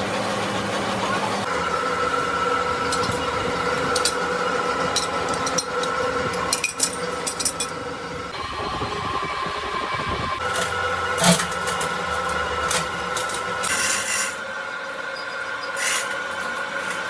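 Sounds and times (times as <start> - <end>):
machine tool whining: 0.0 - 17.0.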